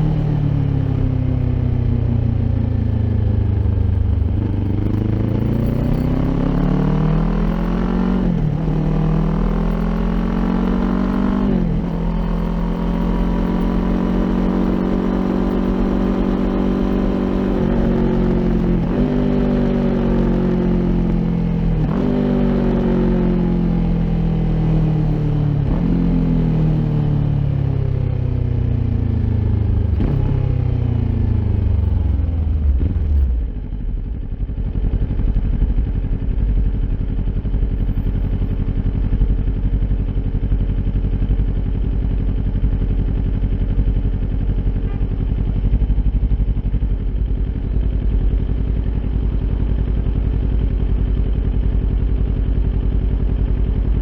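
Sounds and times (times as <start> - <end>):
motorcycle engine decelerating: 0.0 - 54.0
motorcycle engine idling: 30.7 - 54.0.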